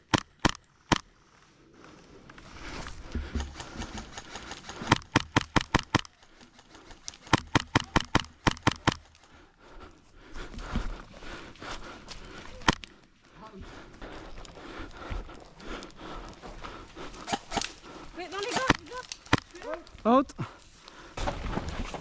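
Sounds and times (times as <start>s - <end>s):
airsoft gun rapid shots: 0.0s - 1.0s, 3.4s - 6.2s, 7.0s - 9.1s, 17.2s - 17.8s, 18.4s - 19.4s
rustling of movement: 0.2s - 22.0s.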